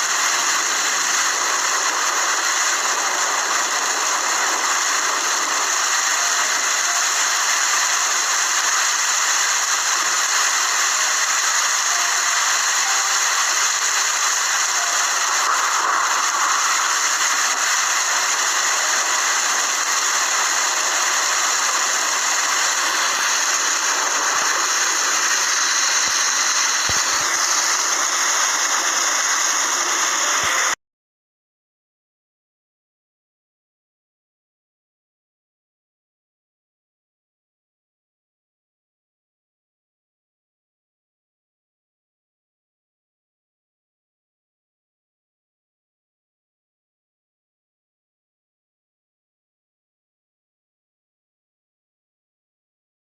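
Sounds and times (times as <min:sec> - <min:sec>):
steady rain hiss: 0:00.0 - 0:30.8.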